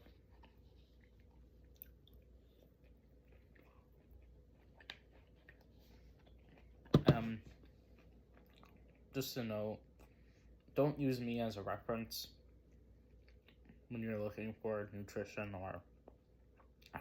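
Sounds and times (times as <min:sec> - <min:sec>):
quiet chewing: 0:00.0 - 0:09.2, 0:09.8 - 0:10.8, 0:12.4 - 0:13.9, 0:16.0 - 0:17.0.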